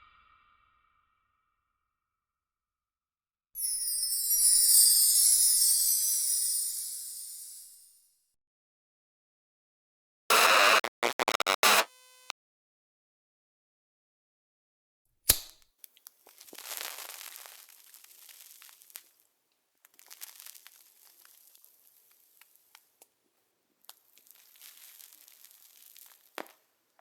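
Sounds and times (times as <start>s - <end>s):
crackling crumpling noise: 10.5s - 12.3s, 15.9s - 27.0s
sharp crack: 15.3s - 15.6s.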